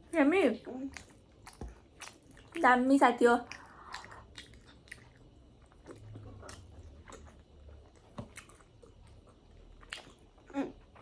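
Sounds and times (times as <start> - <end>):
quiet chewing: 0.7 - 2.7, 3.4 - 11.0.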